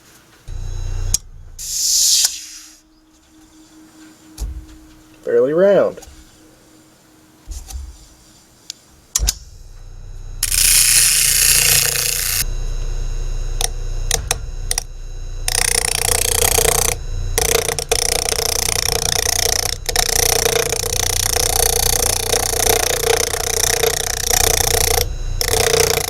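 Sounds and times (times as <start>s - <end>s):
electric motor humming: 0.5s - 2.4s, 9.2s - 26.0s
chisel cutting spinning wood: 10.4s - 12.4s, 13.6s - 26.0s.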